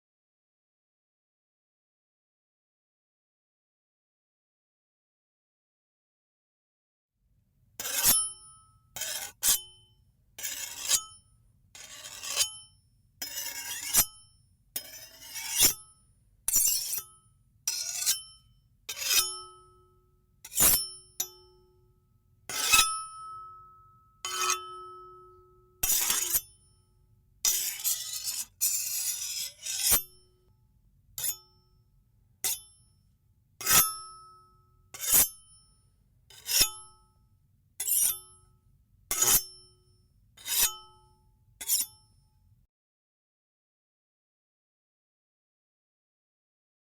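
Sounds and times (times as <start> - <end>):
knife blades scraping together: 19.0 - 19.4, 25.8 - 26.5, 27.5 - 30.2, 41.7 - 42.0.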